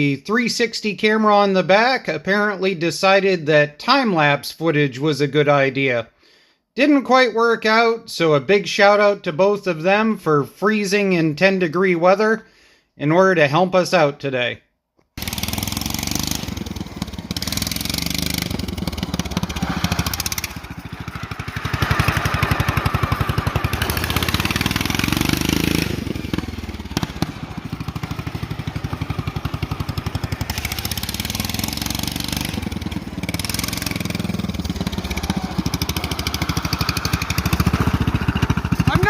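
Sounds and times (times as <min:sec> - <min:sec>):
tractor engine revving: 0:15.2 - 0:39.0.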